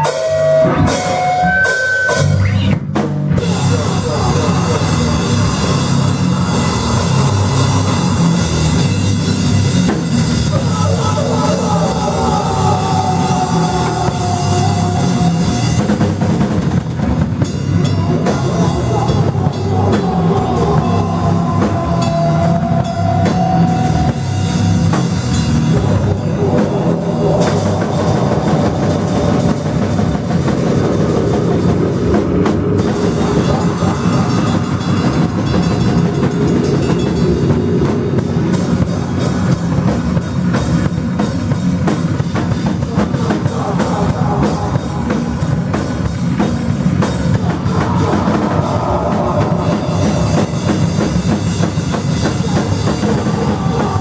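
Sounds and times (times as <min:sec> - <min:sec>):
live rock band playing: 0:00.0 - 0:11.0
pounding drum kit: 0:00.0 - 0:54.0.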